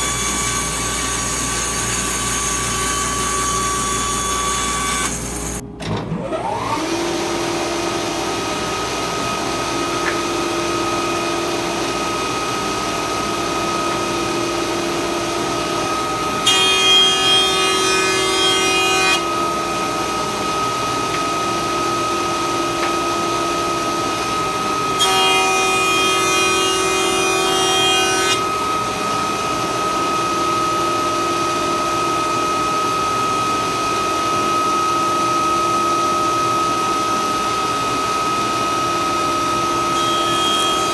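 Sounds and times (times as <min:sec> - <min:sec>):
machine cutting wood: 0:00.0 - 0:07.8, 0:39.5 - 0:40.9
woodworking machine running: 0:00.0 - 0:17.1, 0:37.8 - 0:40.9.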